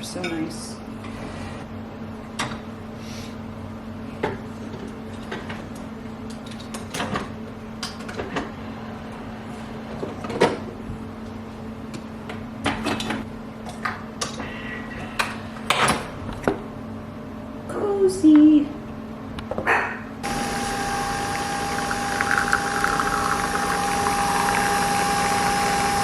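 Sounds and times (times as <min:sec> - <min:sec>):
steady low hum: 0:20.1 - 0:26.0.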